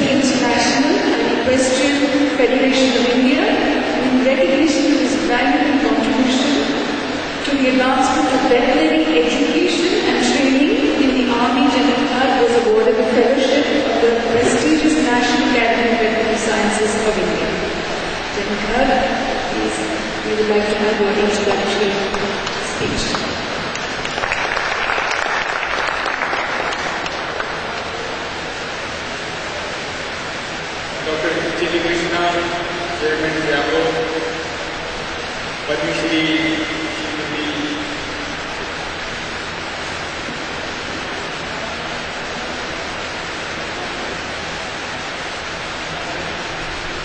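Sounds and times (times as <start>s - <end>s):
steady hiss: 0.0s - 47.0s
audience applauding: 22.1s - 28.3s.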